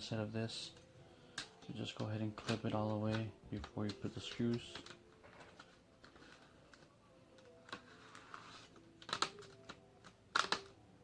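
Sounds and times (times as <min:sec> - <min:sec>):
plastic clips snapping: 0:01.3 - 0:07.8, 0:09.0 - 0:10.8.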